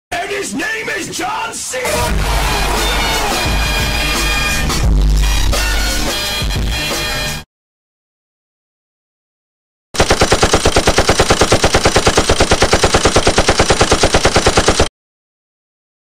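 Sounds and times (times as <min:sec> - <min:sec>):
rapid automatic gunfire: 0:10.0 - 0:14.9.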